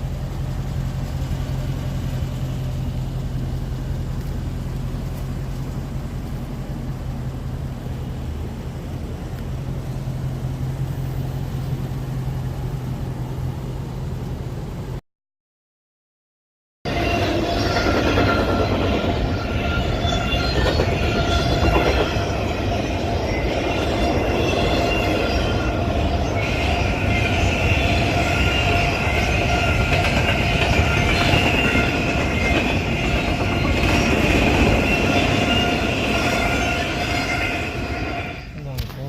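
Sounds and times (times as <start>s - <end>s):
vehicle rumble in motion: 0.0s - 15.0s, 16.9s - 39.0s
steady whine: 16.9s - 39.0s.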